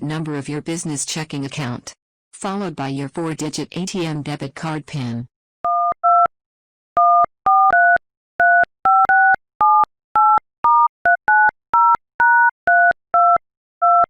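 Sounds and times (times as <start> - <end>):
telephone keypad beeps: 7.0 - 14.0.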